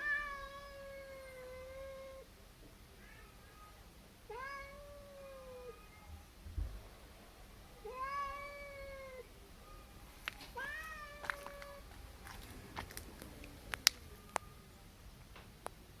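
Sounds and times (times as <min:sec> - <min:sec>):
cat yowling: 0:03.0 - 0:06.0, 0:07.8 - 0:09.3, 0:10.6 - 0:11.9
sharp clicks: 0:12.9 - 0:14.5.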